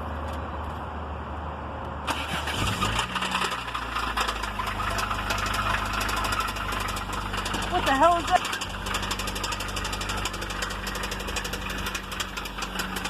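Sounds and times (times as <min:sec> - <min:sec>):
car engine knocking: 0:03.3 - 0:13.0.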